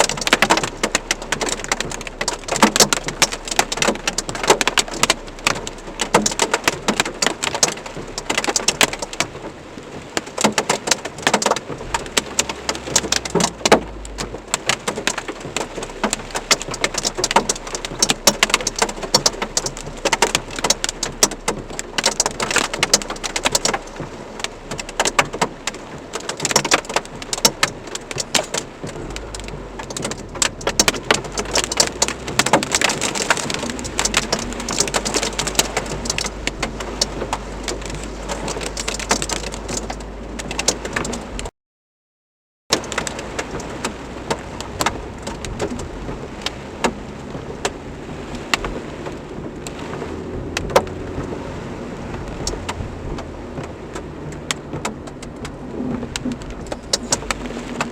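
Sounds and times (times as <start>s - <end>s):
rain and hail on hard surface: 0.0s - 41.5s, 42.7s - 57.9s
low rumble: 11.6s - 26.2s, 26.9s - 41.5s, 43.2s - 57.9s.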